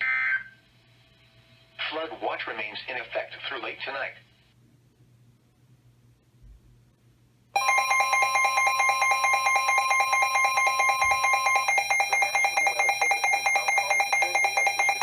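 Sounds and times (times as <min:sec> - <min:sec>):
electronic alert tone: 0:07.6 - 0:15.0.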